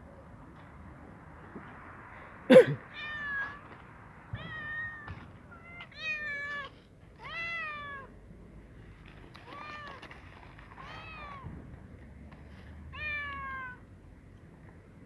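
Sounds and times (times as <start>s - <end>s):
cat meowing: 4.3s - 8.1s, 13.0s - 13.8s.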